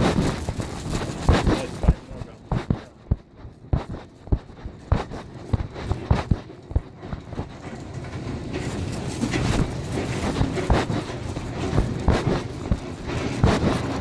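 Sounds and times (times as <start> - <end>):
dull footstep thumps: 0.0 - 7.4
fabric rubbing over microphone: 0.0 - 14.0.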